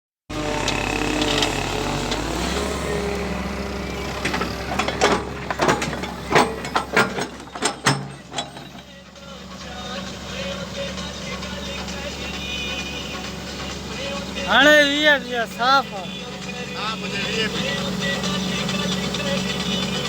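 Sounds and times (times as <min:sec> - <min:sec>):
machinery humming: 0:00.3 - 0:20.0
metallic clicks and clanks: 0:04.2 - 0:08.9.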